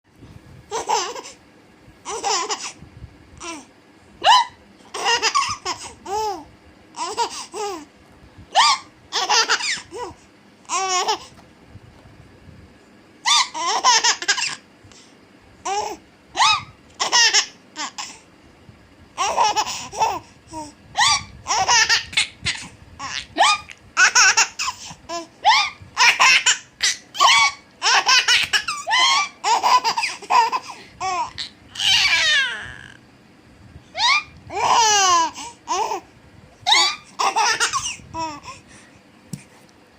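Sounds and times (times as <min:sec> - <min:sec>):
baby laughing: 0:00.7 - 0:01.4, 0:02.0 - 0:02.8, 0:04.2 - 0:07.9, 0:08.6 - 0:11.3, 0:13.2 - 0:14.6, 0:15.7 - 0:18.2, 0:19.2 - 0:33.0, 0:34.0 - 0:36.0, 0:36.7 - 0:38.5.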